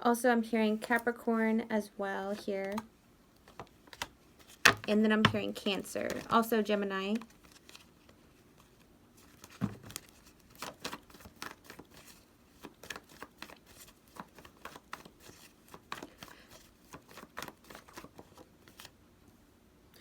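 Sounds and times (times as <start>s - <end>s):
cards rustling and flicking: 2.3s - 19.0s
soft thump of cards: 9.6s - 10.0s.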